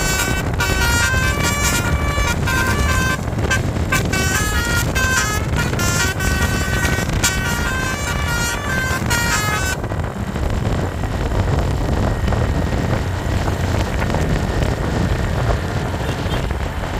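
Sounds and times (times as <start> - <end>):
bus horn playing melody: 0.0 - 10.4, 15.9 - 16.6
bus engine rumble: 0.0 - 16.9.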